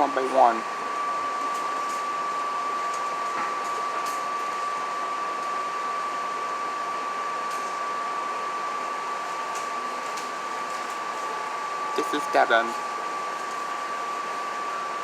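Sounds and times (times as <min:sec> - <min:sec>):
constant high-pitched tone: 0:11.3 - 0:15.0.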